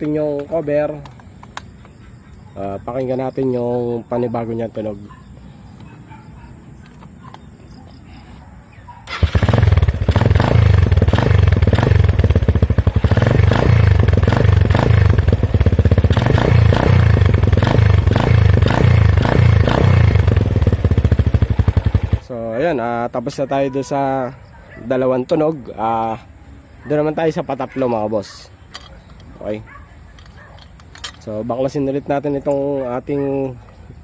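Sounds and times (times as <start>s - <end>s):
motorcycle engine pulsing: 9.0s - 22.3s.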